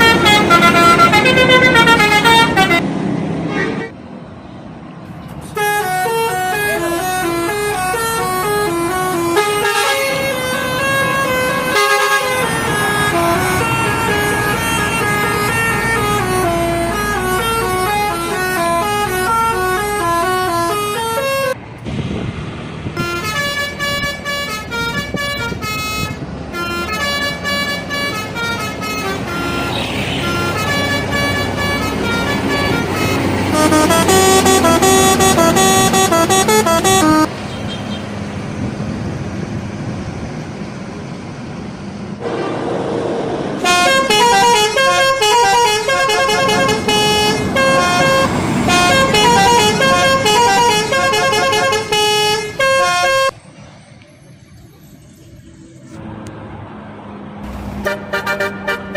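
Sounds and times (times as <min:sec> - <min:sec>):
multi-tone musical bus horns: 0:00.0 - 0:04.0, 0:05.4 - 0:21.6, 0:23.0 - 0:38.1, 0:43.6 - 0:53.4, 0:57.5 - 0:58.9
road and engine noise: 0:00.0 - 0:58.9.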